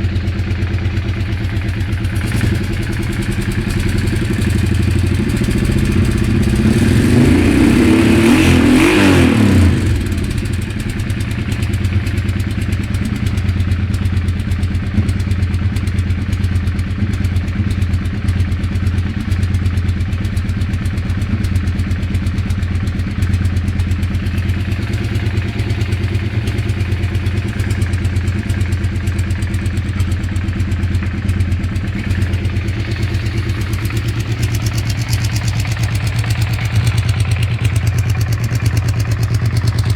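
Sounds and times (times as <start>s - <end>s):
engine idling unevenly: 0.0s - 39.9s.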